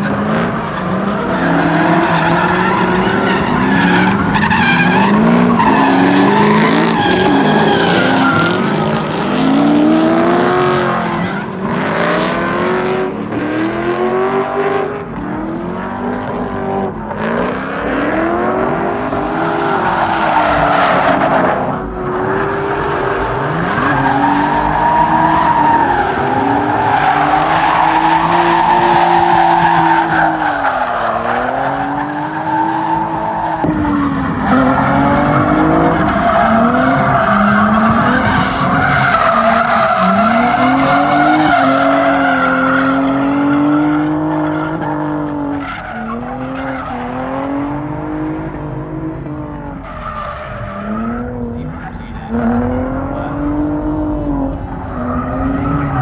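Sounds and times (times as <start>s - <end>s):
car engine revving: 0.0s - 56.0s
tires squealing: 0.0s - 56.0s.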